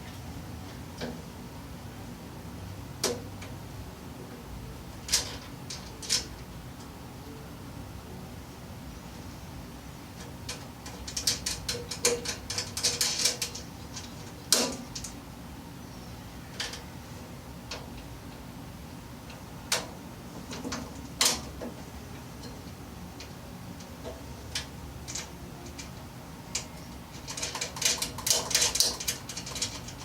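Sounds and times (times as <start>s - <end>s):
small metal clicks: 10.5s - 15.2s, 23.2s - 30.0s.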